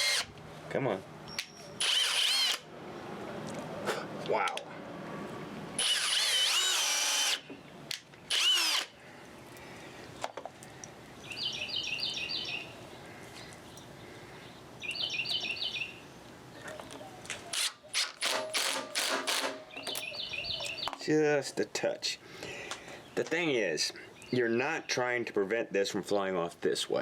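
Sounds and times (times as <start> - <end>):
drill motor whining: 0.0 - 0.3, 1.8 - 2.7, 5.8 - 7.5, 8.3 - 8.9.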